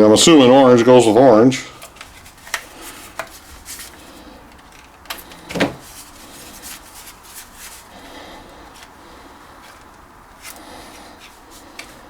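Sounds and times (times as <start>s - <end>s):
plastic parts clicking and knocking: 1.8s - 6.0s.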